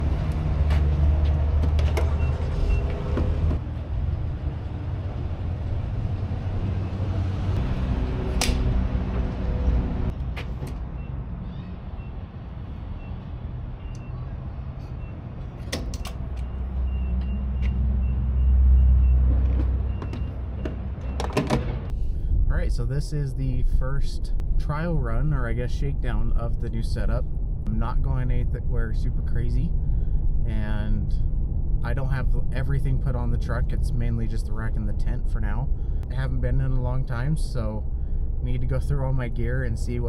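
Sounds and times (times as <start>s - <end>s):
truck engine and road rumble: 0.0s - 40.0s
knocks and rattles: 19.4s - 21.9s.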